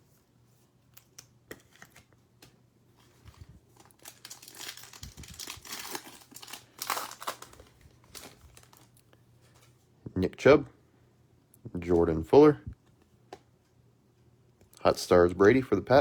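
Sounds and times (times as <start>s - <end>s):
card pack wrapper crinkling: 3.0s - 9.8s.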